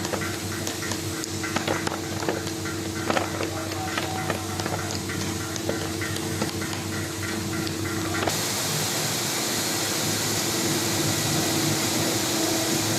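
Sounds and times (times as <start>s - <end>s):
tablet press humming: 0.0s - 8.3s
steady hiss: 0.0s - 12.9s.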